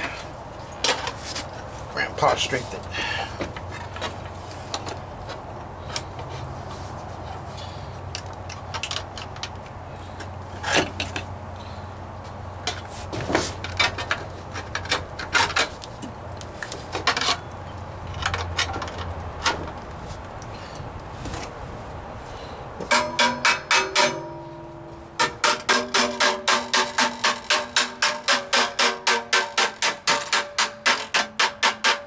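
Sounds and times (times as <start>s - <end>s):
steady low hum: 19.8s - 27.8s
metal clinks and scrapes: 22.8s - 32.0s.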